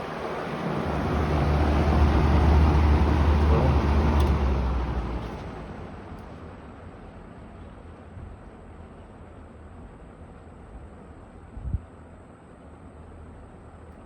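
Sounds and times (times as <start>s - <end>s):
box fan running: 0.0s - 5.3s.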